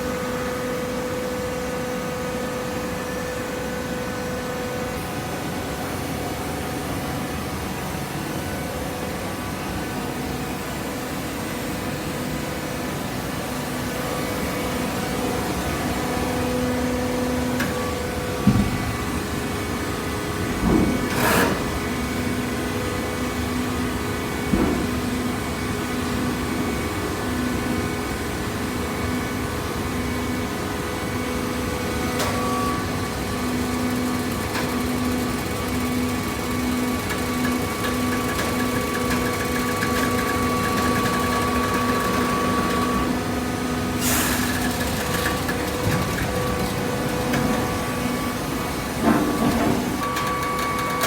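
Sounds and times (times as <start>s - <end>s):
loud machine clatter: 15.3s - 22.4s, 31.6s - 51.0s
machine knocks: 17.6s - 19.3s
baler machine hum: 30.2s - 51.0s.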